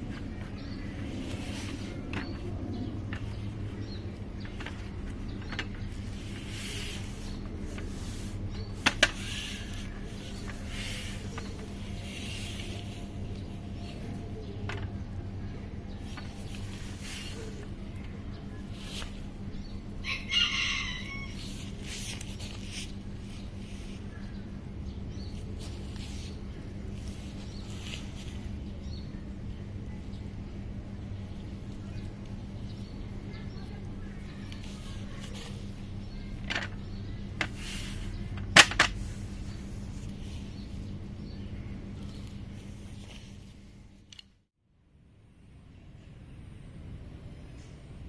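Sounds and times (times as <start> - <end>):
steady low hum: 0.0 - 48.0
rooster crowing: 20.0 - 21.5.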